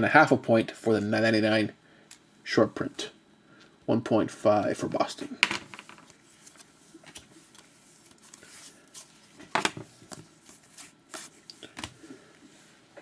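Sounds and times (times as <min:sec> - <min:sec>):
trading cards tapping and sliding: 0:05.7 - 0:12.0.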